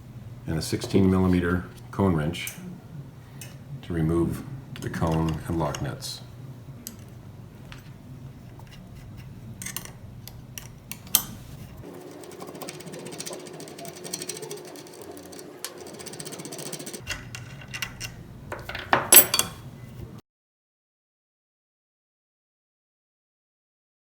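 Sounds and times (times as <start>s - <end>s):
wrenches clicking and clanking: 11.8s - 19.5s.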